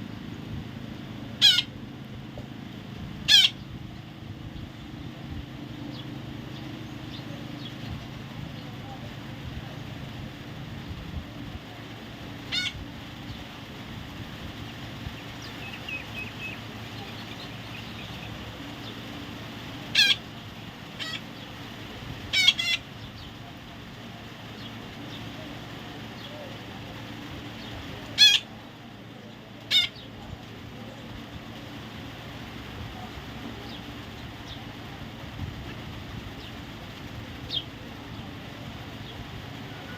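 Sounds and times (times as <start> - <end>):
steady low hum: 0.0 - 39.9
parrot squawking: 1.4 - 1.8, 3.2 - 3.6, 12.4 - 12.8, 15.2 - 18.4, 19.9 - 20.2, 21.0 - 21.3, 22.3 - 22.9, 28.2 - 28.5, 29.7 - 30.0.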